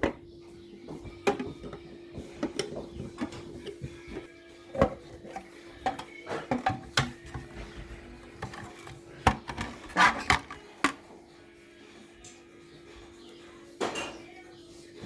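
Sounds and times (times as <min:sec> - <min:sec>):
tools and parts clicking and rattling: 0:01.2 - 0:07.6, 0:08.3 - 0:11.0.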